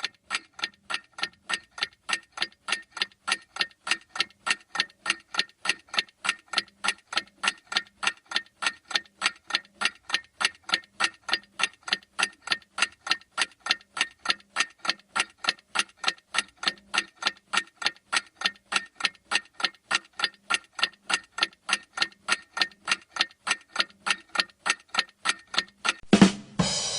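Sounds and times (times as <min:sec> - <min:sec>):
clock ticking: 0:00.0 - 0:26.4.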